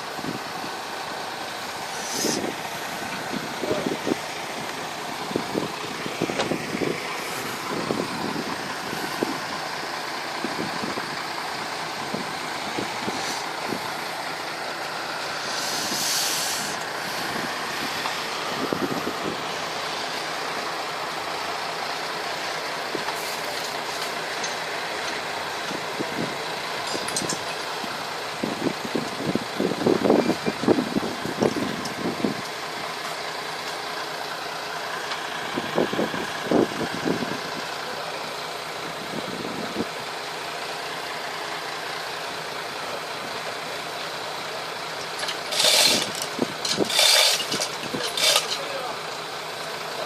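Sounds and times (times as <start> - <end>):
short hiss: 1.9 - 2.5, 15.4 - 16.8
boat engine running: 45.1 - 50.0.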